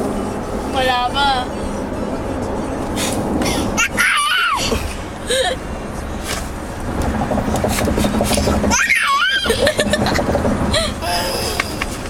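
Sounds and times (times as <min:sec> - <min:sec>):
baby squealing with laughter: 0:03.8 - 0:04.8, 0:08.7 - 0:09.8
steady low hum: 0:04.8 - 0:12.0.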